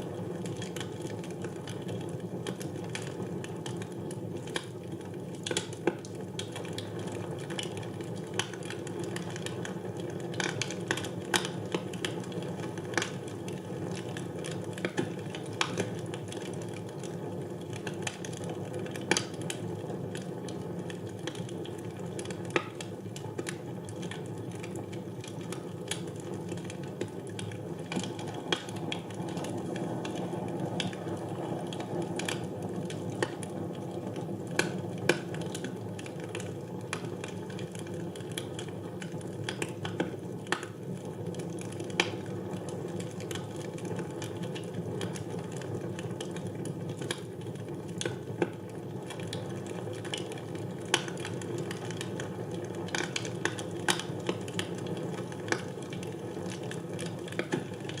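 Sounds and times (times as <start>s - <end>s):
burning logs crackling and popping: 0.0s - 58.0s
low rush of flame: 27.0s - 36.4s.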